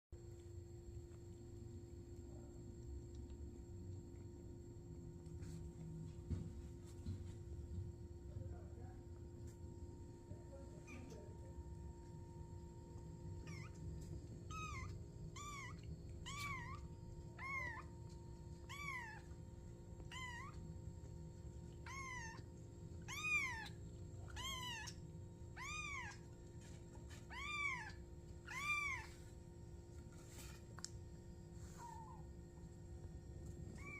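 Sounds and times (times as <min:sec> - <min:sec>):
kitten meowing: 0:13.4 - 0:13.8, 0:14.5 - 0:17.9, 0:18.6 - 0:19.3, 0:20.0 - 0:20.6, 0:21.8 - 0:22.4, 0:23.0 - 0:25.0, 0:25.6 - 0:26.2, 0:27.3 - 0:29.2.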